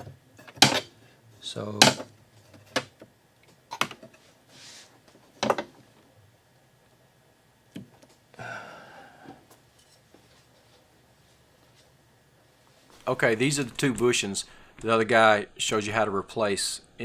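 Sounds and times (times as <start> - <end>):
soft rustling: 9.8 - 13.9.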